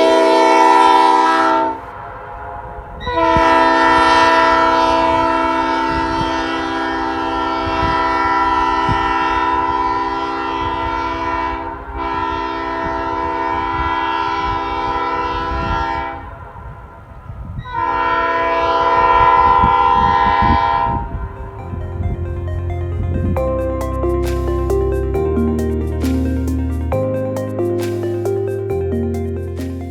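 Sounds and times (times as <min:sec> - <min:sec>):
train horn blowing chord: 0:00.0 - 0:26.2.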